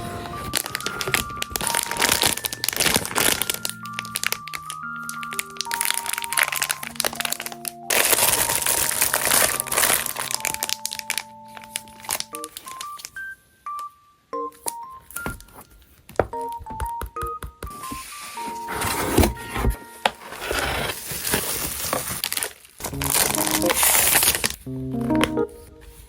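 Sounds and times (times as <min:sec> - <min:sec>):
plastic packaging crinkling: 0:00.0 - 0:13.4, 0:17.8 - 0:24.6
soft keyboard music: 0:00.0 - 0:21.3, 0:22.8 - 0:26.0.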